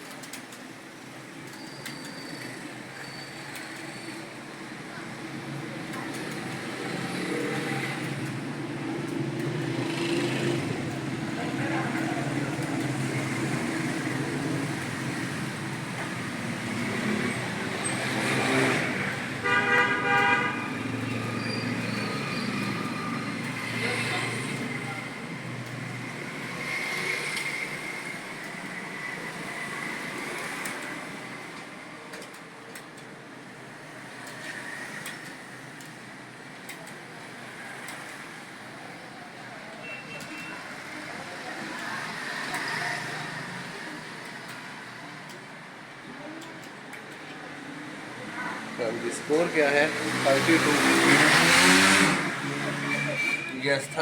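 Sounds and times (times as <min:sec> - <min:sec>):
road traffic noise: 0:00.0 - 0:54.0
vehicle horn honking: 0:19.4 - 0:20.7.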